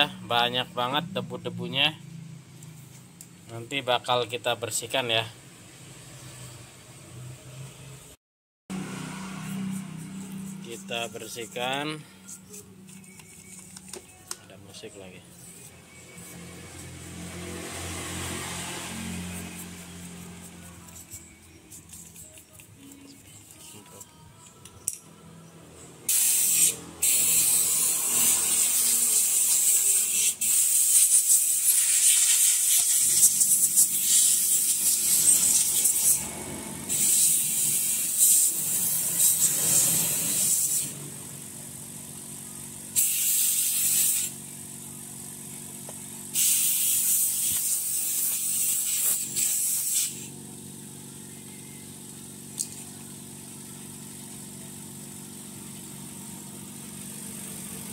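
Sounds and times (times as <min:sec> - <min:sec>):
compressed air blasts hissing: 0:26.1 - 0:36.2, 0:36.9 - 0:41.0, 0:43.0 - 0:44.5, 0:46.3 - 0:50.3.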